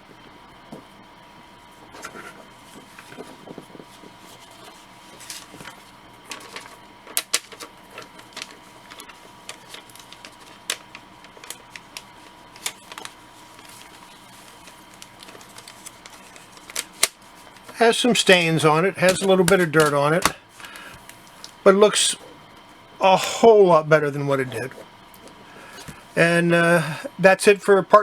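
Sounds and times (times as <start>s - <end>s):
plastic sleeve crackling: 1.9s - 22.0s.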